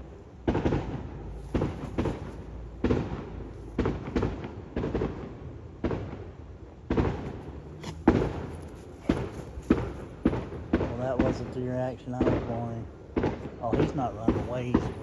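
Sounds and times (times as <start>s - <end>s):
firecrackers banging with echo: 0.0s - 15.0s.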